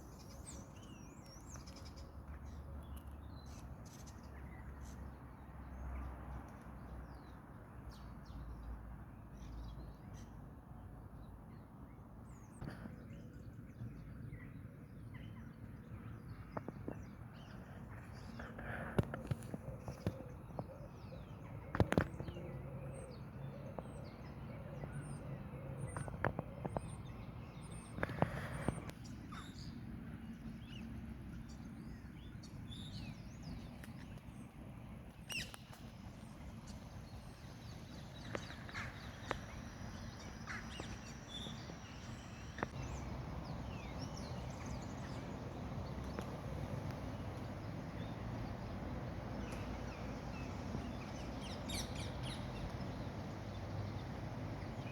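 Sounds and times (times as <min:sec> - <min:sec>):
birds calling and chirping: 0:12.3 - 0:54.9.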